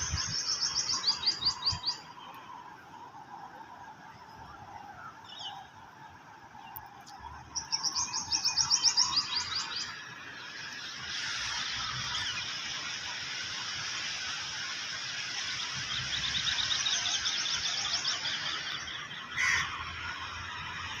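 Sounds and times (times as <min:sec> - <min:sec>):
bird chirping: 0:00.0 - 0:02.4, 0:06.6 - 0:10.0, 0:15.4 - 0:19.4
steady hiss: 0:10.3 - 0:19.1.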